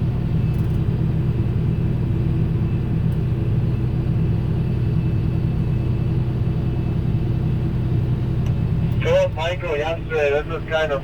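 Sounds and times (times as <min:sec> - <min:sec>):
tractor engine droning: 0:08.0 - 0:11.0.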